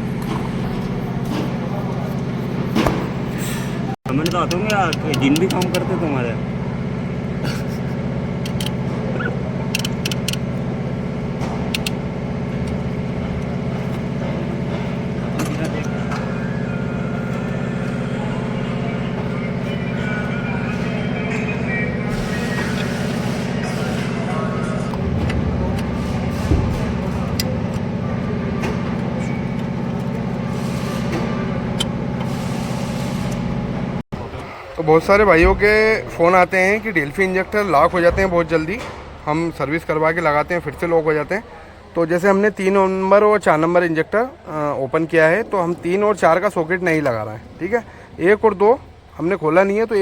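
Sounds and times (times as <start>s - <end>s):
motor engine running: 0.0s - 40.7s
machine humming: 0.0s - 42.0s
sharp metallic clicks: 4.1s - 5.8s, 8.4s - 8.8s, 9.7s - 10.5s.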